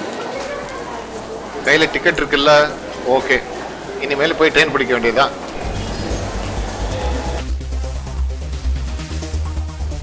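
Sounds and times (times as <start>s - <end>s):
electronic background music: 5.6s - 10.0s.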